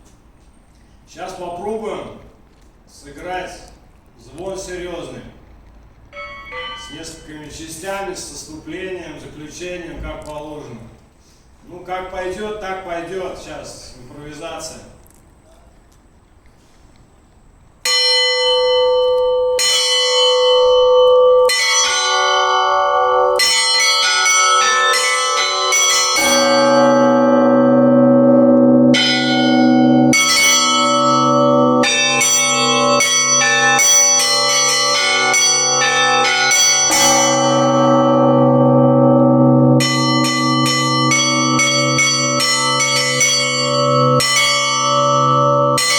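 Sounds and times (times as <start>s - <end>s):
deep church bell: 6.1s - 8.5s, 17.8s - 45.9s
small church bell strokes: 6.1s - 8.5s, 17.9s - 45.9s.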